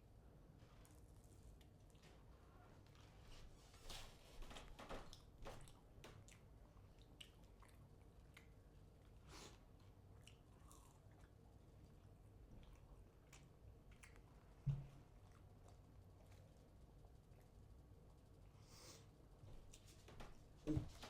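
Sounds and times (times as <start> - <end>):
person chewing food: 5.1 - 18.1.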